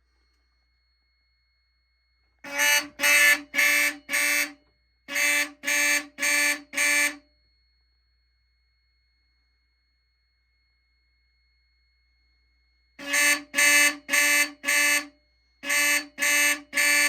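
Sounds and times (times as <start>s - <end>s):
fire alarm horn blasts: 2.2s - 7.6s, 12.9s - 17.0s.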